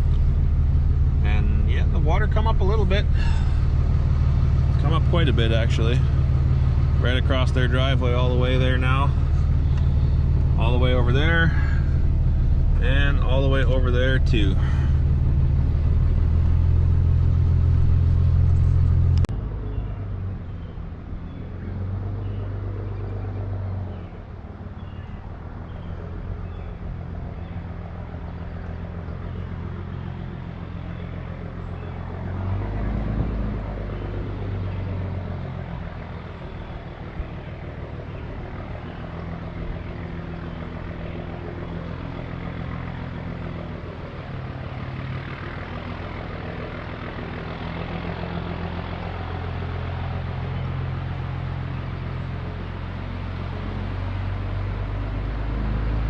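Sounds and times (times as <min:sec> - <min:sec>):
vehicle engine droning: 0:00.0 - 0:56.0.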